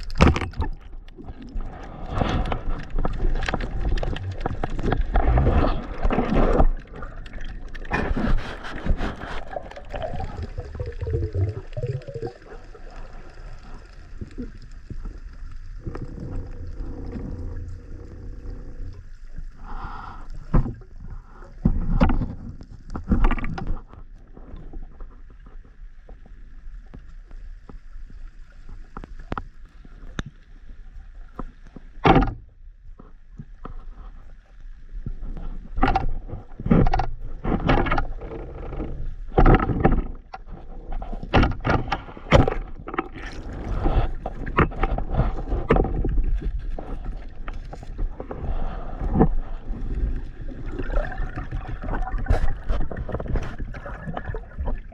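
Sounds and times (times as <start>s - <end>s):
splashes and knocks: 0.0s - 12.4s, 39.3s - 54.9s
sea water sloshing and gurgling: 0.0s - 54.9s.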